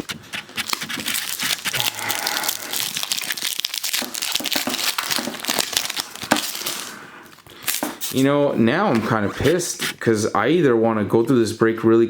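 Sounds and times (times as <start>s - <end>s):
foil wrapper crinkling and tearing: 0.0s - 8.3s.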